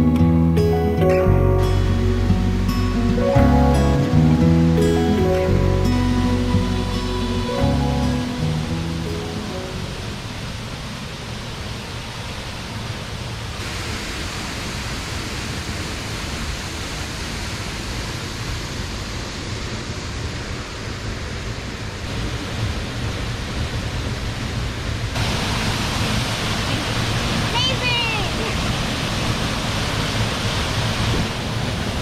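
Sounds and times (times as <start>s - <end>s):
rushing water: 0.0s - 32.0s.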